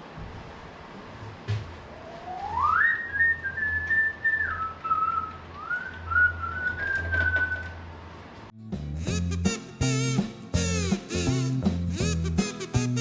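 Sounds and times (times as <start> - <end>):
person whistling: 2.4 - 7.7.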